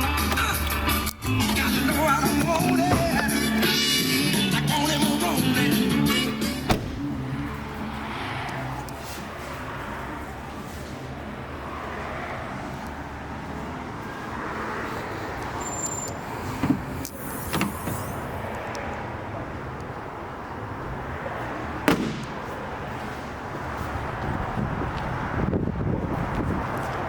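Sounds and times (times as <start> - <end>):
car noise: 0.0 - 27.0.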